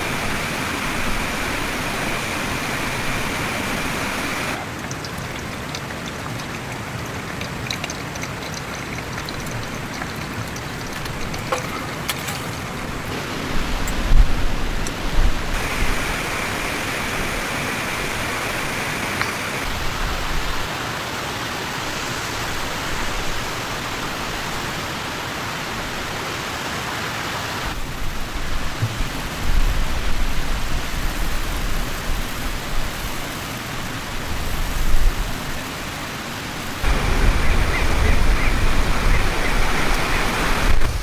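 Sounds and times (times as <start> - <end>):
wind and snow hissing: 0.0 - 4.6, 12.2 - 20.7, 36.6 - 41.0
wind buffeting microphone: 0.0 - 4.6, 10.8 - 20.7, 36.7 - 41.0.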